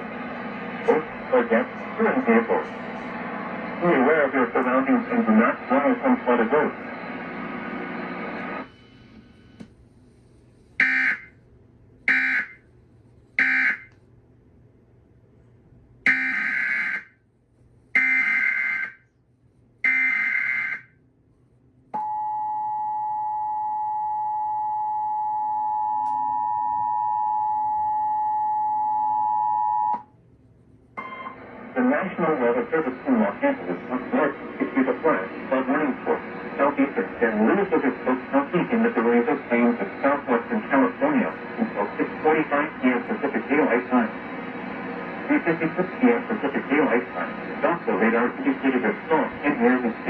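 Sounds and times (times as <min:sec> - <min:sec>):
two-tone attention signal: 0:31.0 - 0:31.4.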